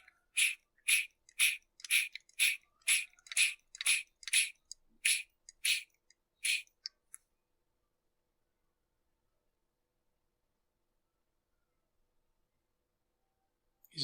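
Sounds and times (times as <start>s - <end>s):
hand vacuum pump hissing strokes: 0.0s - 5.8s, 6.4s - 6.6s
small clicks: 0.0s - 7.2s.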